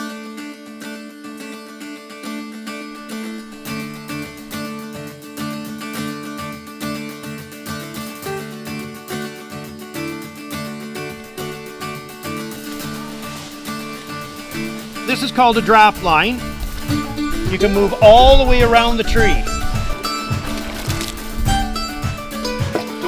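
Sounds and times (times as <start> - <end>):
plucked strings: 0.0 - 23.0
bass line with steady beat: 14.7 - 22.9.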